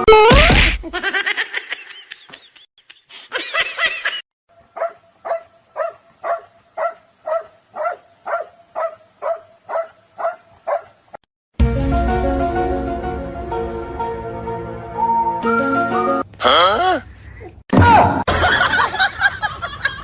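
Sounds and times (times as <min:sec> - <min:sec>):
high squeaky sounds: 0:00.0 - 0:00.6
dog barking: 0:04.7 - 0:11.0.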